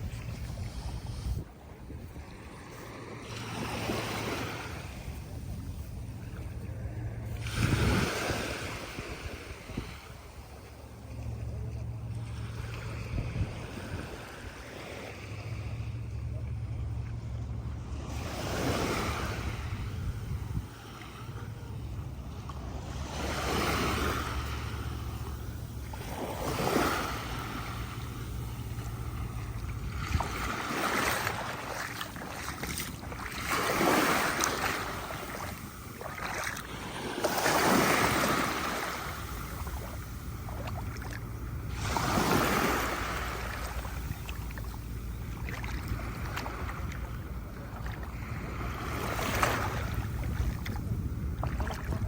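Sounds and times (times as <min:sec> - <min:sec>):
small waves breaking on beach: 0:00.0 - 0:52.0
wind rumble on microphone: 0:00.0 - 0:52.0.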